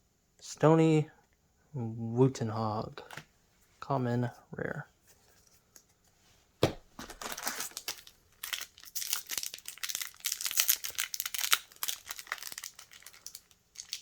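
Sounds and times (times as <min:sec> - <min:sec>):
foil wrapper crinkling and tearing: 0:07.0 - 0:14.0.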